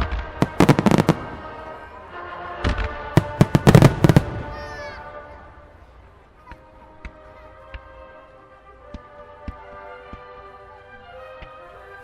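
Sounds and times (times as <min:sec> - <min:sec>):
fireworks bursting with sharp bangs: 0:00.0 - 0:01.8, 0:02.6 - 0:04.8.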